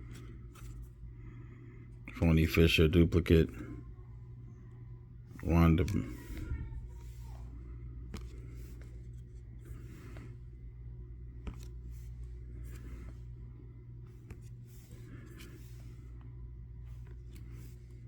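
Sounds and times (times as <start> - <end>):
trading cards rustling: 0.0 - 1.0, 5.2 - 18.0
steady low hum: 0.0 - 18.0.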